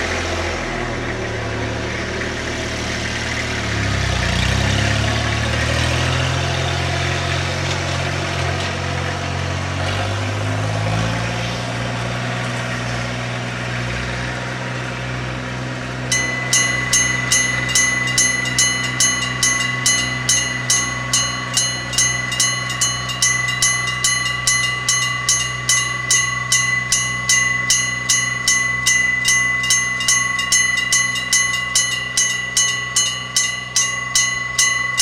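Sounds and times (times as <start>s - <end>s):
vehicle engine running: 0.0s - 35.0s
level crossing warning bell: 16.0s - 35.0s.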